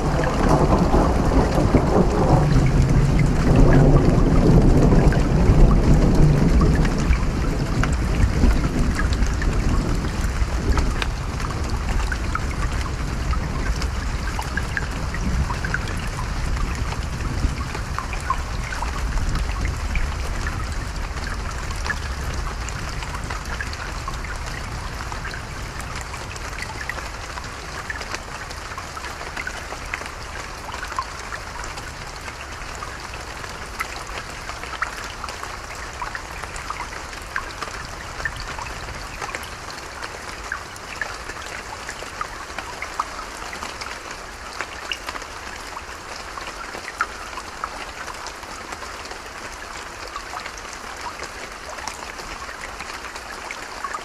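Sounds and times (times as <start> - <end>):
low thunder rumble: 0.0 - 26.4
creek water trickling: 0.0 - 54.0
rain dripping: 0.0 - 54.0.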